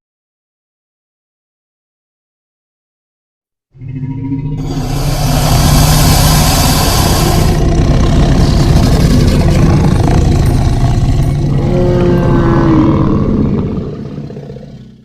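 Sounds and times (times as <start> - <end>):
deep rumbling dinosaur growl: 3.8 - 15.0.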